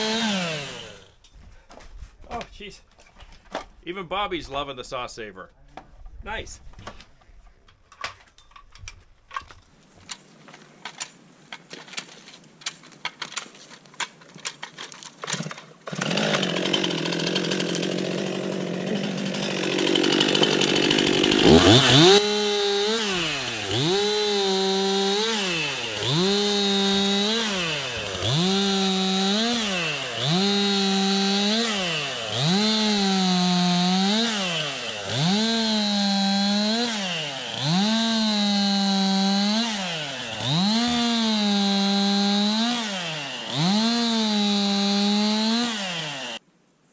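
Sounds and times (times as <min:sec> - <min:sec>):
chainsaw running at high revs: 0:00.0 - 0:01.2, 0:15.9 - 0:46.4.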